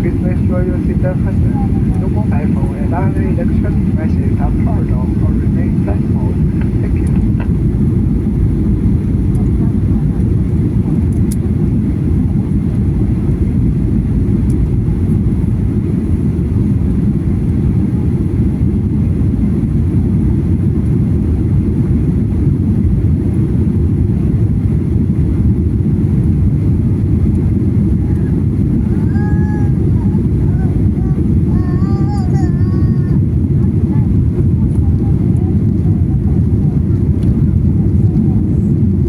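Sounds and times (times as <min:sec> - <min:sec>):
rushing air: 0:00.0 - 0:34.6
jet engines rumbling: 0:00.0 - 0:39.0.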